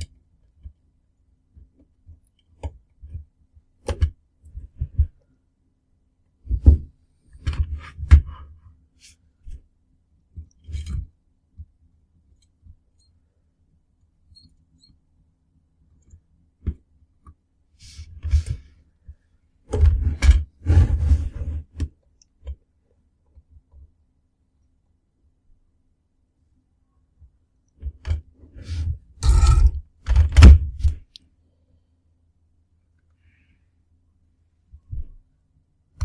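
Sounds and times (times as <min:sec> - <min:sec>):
hands handling small parts and tools: 0:28.8 - 0:31.0.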